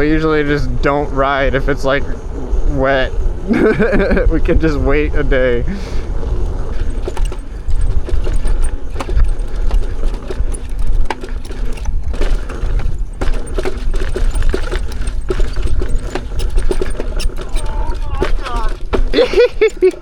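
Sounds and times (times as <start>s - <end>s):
wind rumble on microphone: 0.0s - 20.0s
rapid irregular clicks and knocks: 5.7s - 20.0s.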